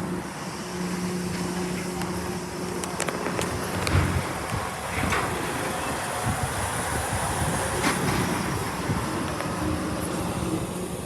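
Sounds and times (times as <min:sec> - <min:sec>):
train passing rumble: 0:00.0 - 0:11.0.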